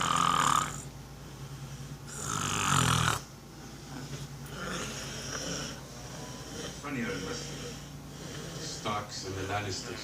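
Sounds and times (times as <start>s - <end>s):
person snoring: 0.0s - 0.9s, 2.1s - 3.3s, 4.4s - 9.0s.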